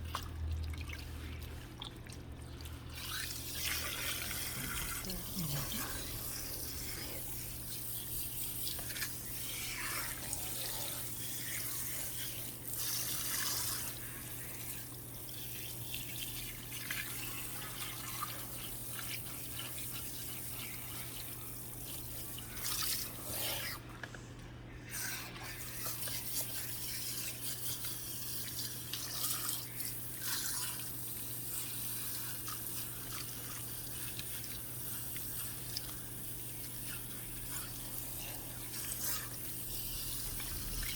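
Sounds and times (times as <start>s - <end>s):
water dripping: 0.0s - 6.7s.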